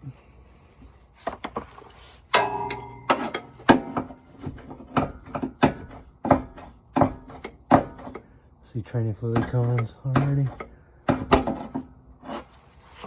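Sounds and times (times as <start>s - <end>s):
metal tool clinking on metal: 2.4s - 4.2s
ringing metallic clank: 2.4s - 4.5s.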